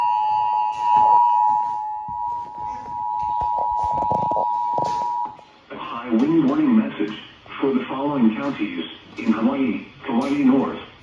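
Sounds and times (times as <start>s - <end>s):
two-tone alert alarm: 0.0s - 5.4s.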